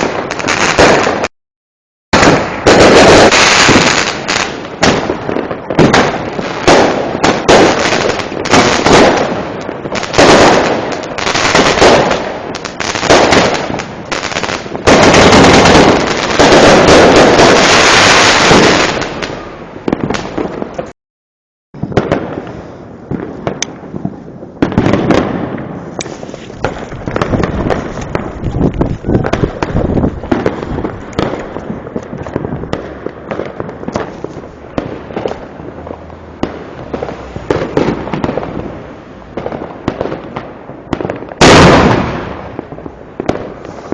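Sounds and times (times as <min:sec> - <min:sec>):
fireworks bangs and crackles: 0:00.0 - 0:01.3, 0:02.1 - 0:21.0, 0:21.8 - 0:43.9.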